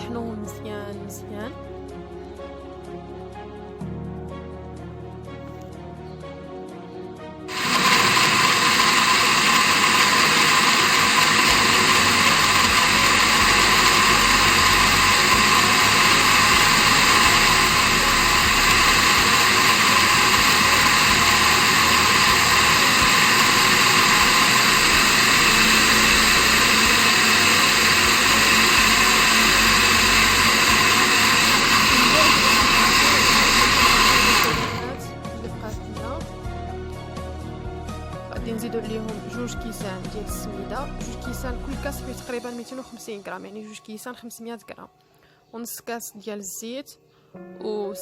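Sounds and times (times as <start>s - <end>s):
electric blender running: 7.5s - 35.0s.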